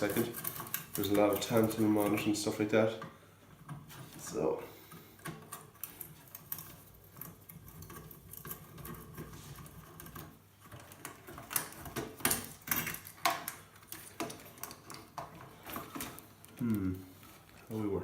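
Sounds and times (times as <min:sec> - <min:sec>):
computer parts clicking and clattering: 0:00.0 - 0:17.8.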